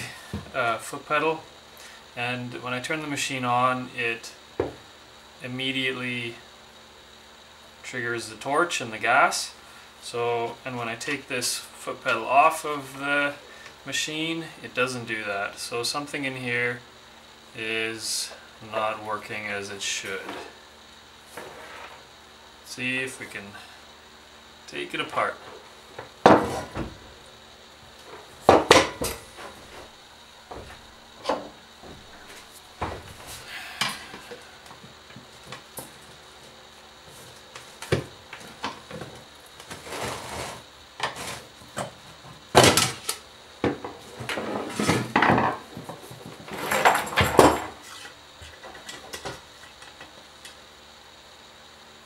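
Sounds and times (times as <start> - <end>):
tools and metal parts clattering: 44.2 - 49.3.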